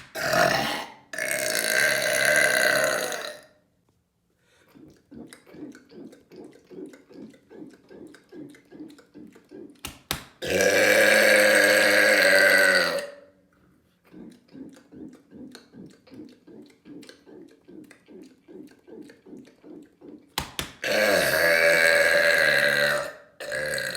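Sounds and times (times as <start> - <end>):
man burping loudly: 0.2 - 3.6, 10.4 - 13.3, 20.8 - 23.9
faint rhythmic pulsing: 4.3 - 10.5, 13.2 - 21.8.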